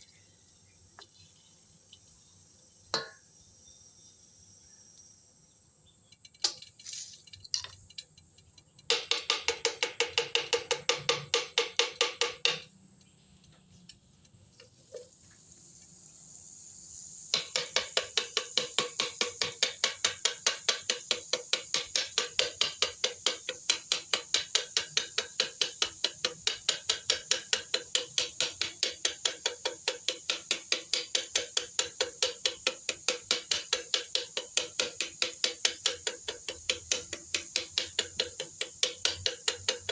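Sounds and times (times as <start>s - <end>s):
utensil clacking against bowl: 8.8s - 12.7s, 17.3s - 39.9s.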